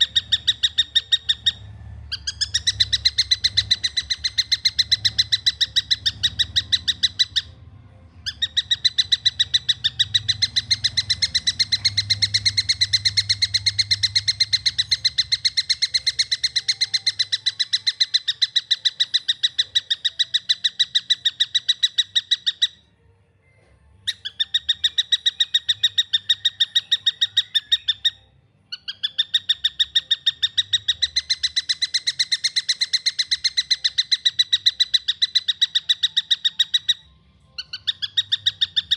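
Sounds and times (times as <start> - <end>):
kingfisher calling: 0.0 - 7.6, 8.2 - 22.7, 28.8 - 37.0.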